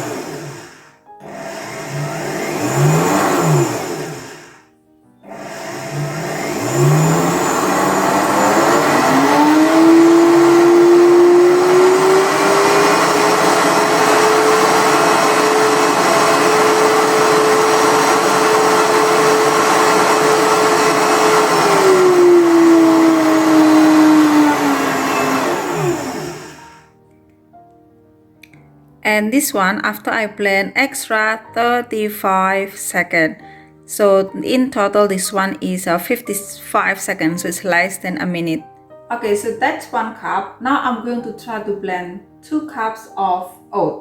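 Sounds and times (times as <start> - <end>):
blender grinding oats: 0.0 - 4.6, 5.2 - 26.9.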